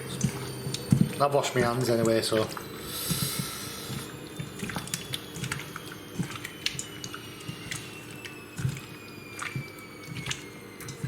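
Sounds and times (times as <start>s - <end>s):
squelching of wet raw meat: 2.3s - 11.0s.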